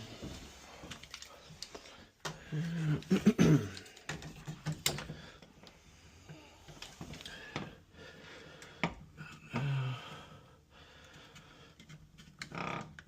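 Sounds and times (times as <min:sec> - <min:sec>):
tools clicking and knocking: 0:03.7 - 0:05.2.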